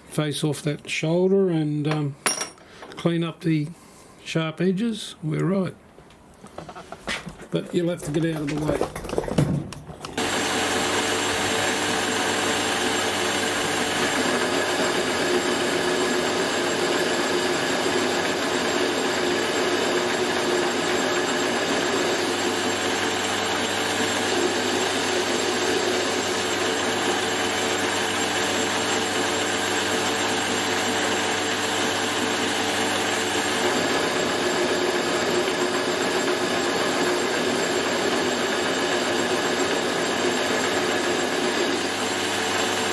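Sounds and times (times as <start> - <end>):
metal lathe running: 10.2 - 42.9.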